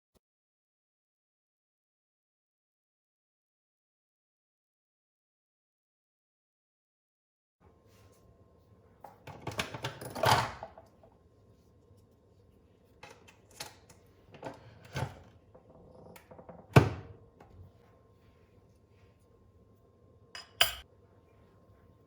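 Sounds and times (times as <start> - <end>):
kitchen items clattering: 9.2 - 10.9, 20.4 - 20.8.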